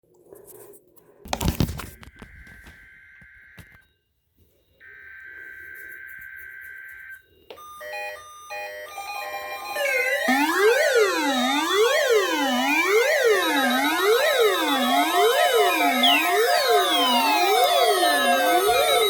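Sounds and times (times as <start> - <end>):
steady high alarm tone: 2.4 - 19.0
rising and falling siren sweeps: 8.6 - 19.0
stepped electronic beeps: 9.7 - 19.0.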